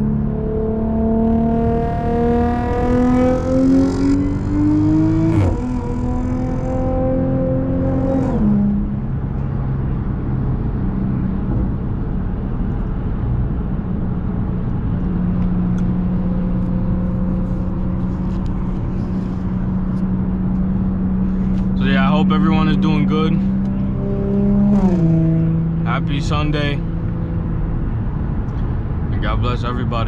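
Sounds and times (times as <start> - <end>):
car engine from inside: 0.0 - 29.2.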